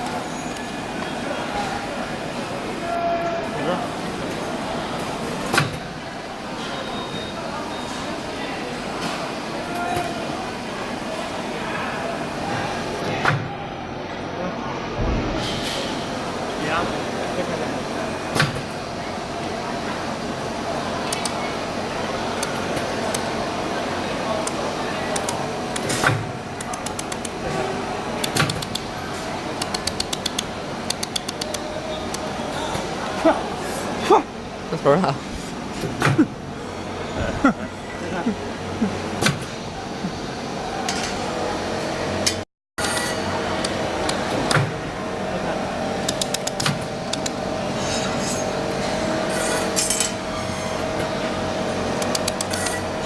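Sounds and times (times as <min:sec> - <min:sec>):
machine and shop noise: 0:00.0 - 0:53.0
laser welder ticking: 0:46.0 - 0:47.3.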